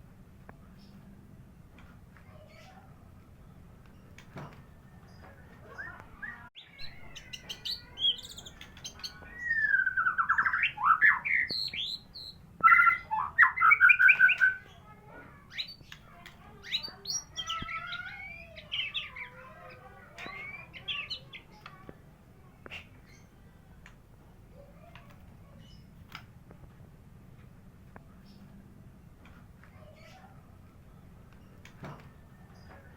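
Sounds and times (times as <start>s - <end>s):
songbird singing whistles and trills: 5.7s - 14.7s.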